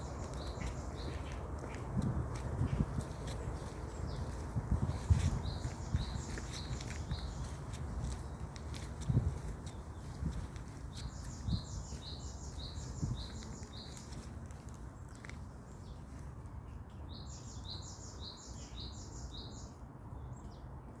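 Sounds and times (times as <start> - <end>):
steady low rumble: 0.0 - 13.7.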